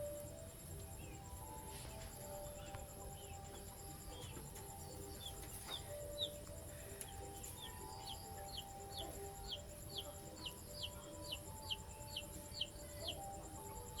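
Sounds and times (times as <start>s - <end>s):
soft background music: 0.0s - 14.0s.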